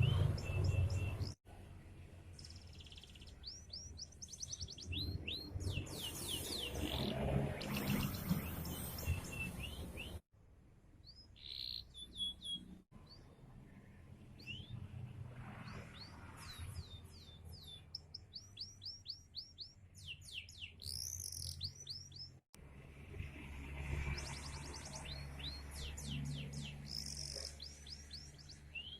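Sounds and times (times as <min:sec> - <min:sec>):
canary singing: 0:00.0 - 0:01.4, 0:02.4 - 0:10.2, 0:11.1 - 0:13.2, 0:17.1 - 0:22.4, 0:24.3 - 0:28.9.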